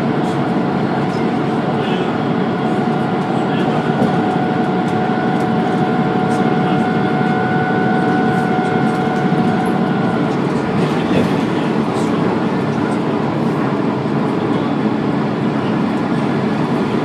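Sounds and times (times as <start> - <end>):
bus engine rumble: 0.0 - 17.0
steady whine: 0.0 - 17.0.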